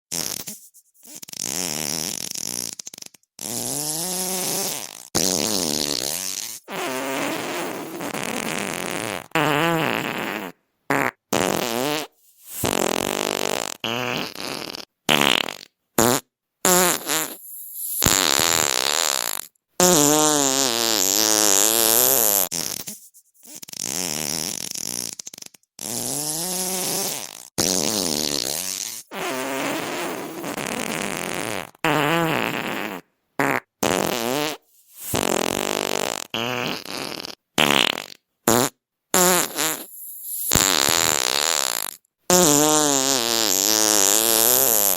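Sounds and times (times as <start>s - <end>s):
fart sounds: 0.1s - 44.9s.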